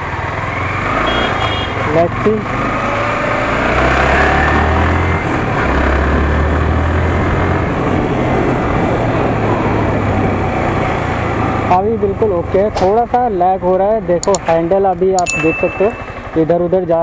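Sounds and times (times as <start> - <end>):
motorcycle engine accelerating: 0.0 - 16.8.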